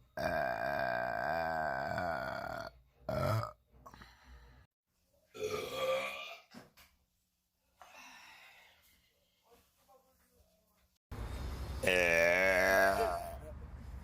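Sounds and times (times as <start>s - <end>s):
woman belching: 0.2s - 3.6s, 5.4s - 6.4s, 11.8s - 13.4s.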